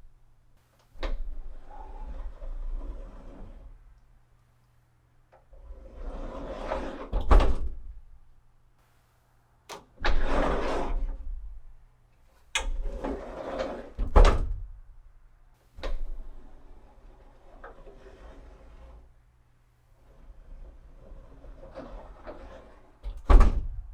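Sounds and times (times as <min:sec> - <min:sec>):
sliding door rolling on track: 0:01.0 - 0:03.8, 0:05.5 - 0:07.6, 0:10.0 - 0:11.3, 0:12.6 - 0:14.4, 0:15.8 - 0:19.1, 0:20.0 - 0:23.2.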